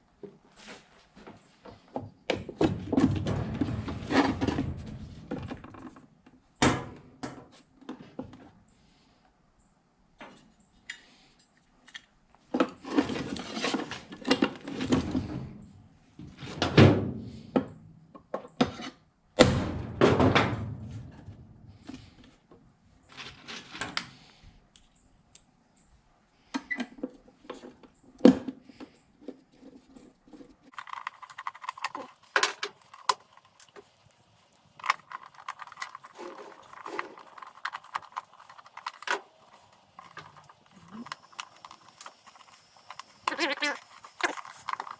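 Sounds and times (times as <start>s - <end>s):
plastic and metal knocking and rattling: 2.3s - 6.0s, 30.7s - 44.9s.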